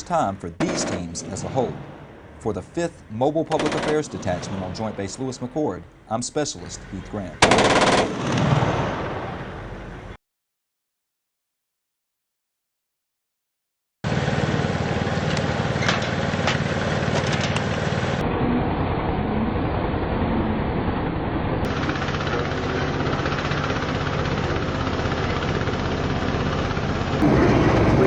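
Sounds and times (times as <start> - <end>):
heavy vehicle engine running: 14.1 - 28.0.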